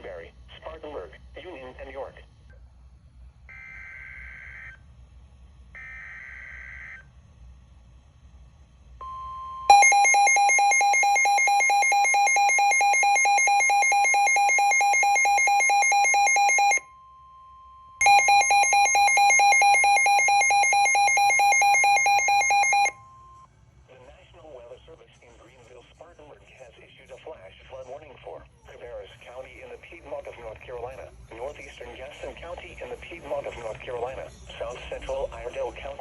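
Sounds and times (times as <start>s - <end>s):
pulsing electronic alarm tone: 9.0s - 23.4s.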